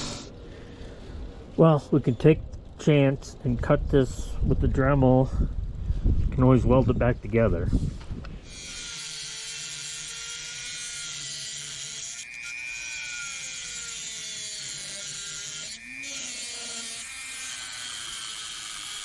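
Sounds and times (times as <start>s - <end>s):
rotary tool cutting steel: 8.4s - 19.0s.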